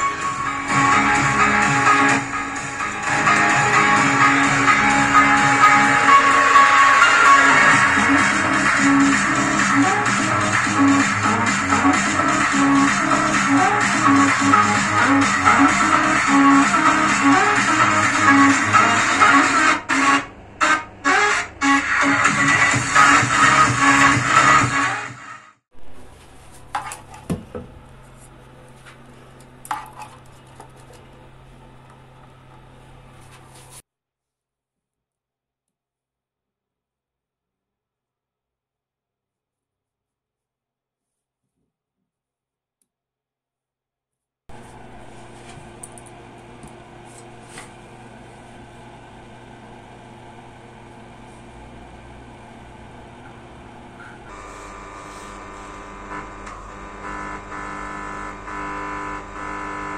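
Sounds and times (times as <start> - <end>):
electronic music: 0.0 - 26.0
steady low hum: 44.5 - 58.3.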